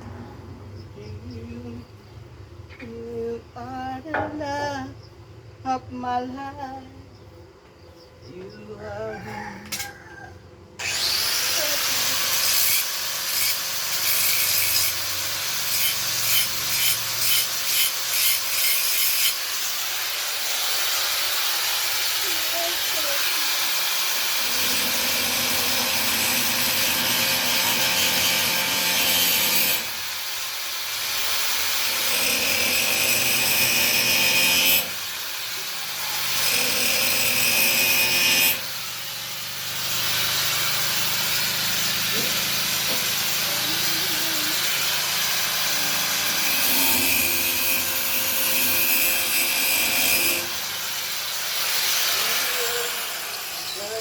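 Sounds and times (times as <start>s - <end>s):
power saw cutting wood: 10.8s - 54.0s.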